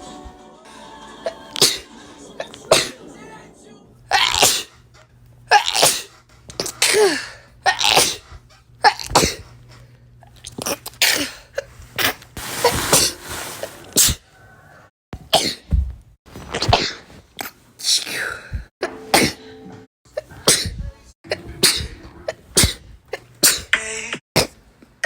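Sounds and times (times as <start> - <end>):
person sneezing: 1.6 - 1.9, 2.7 - 3.0, 4.1 - 4.8, 5.5 - 8.3, 8.9 - 9.5, 21.4 - 23.7.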